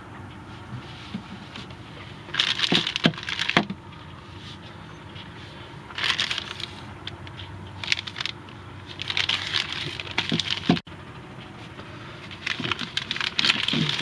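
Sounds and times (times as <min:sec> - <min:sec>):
packaging crinkling and rattling: 0:01.5 - 0:04.1, 0:05.9 - 0:10.8, 0:12.2 - 0:14.0.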